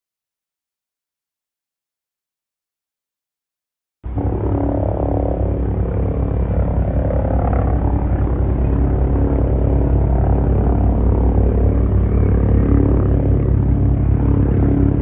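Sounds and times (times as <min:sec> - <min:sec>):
aircraft engine pulsing hum: 0:04.0 - 0:15.0.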